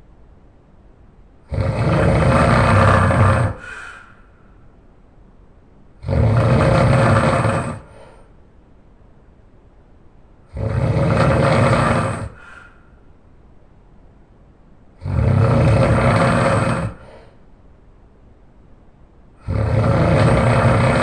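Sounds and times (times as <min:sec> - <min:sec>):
man snoring loudly: 0:01.5 - 0:04.0, 0:06.0 - 0:08.1, 0:10.5 - 0:12.7, 0:15.0 - 0:17.2, 0:19.4 - 0:21.0.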